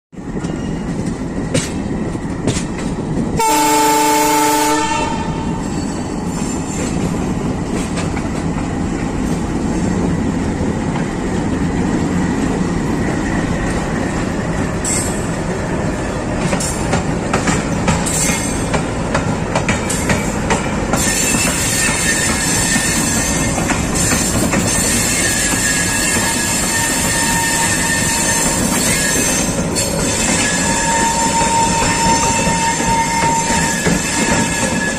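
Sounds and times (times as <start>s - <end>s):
train rumble: 0.2s - 34.9s
train horn: 3.4s - 5.6s, 25.3s - 29.4s, 30.4s - 34.9s
wheels clicking over rail joints: 5.6s - 34.9s
high-pitched wheel squeal: 21.0s - 34.9s.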